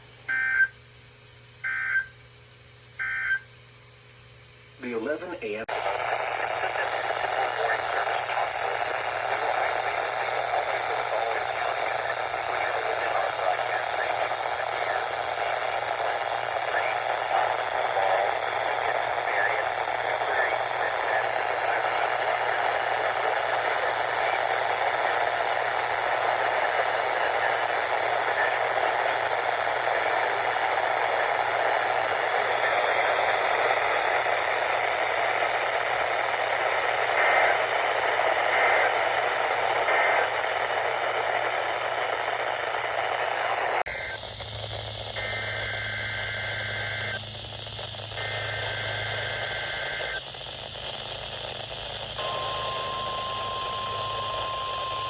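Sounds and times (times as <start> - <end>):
radio static hiss: 4.8 - 55.0
faint steady tones: 6.0 - 55.0
low hum: 27.7 - 55.0.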